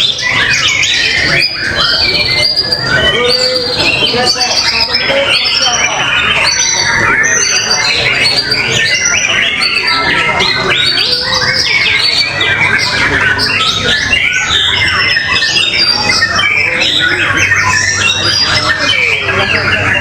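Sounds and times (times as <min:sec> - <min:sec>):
songbirds chorus: 0:00.0 - 0:20.0.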